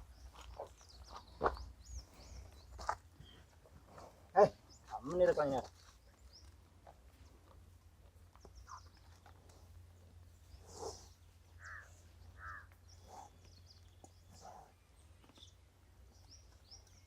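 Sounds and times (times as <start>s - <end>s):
faint bird chirps: 10.4s - 17.0s.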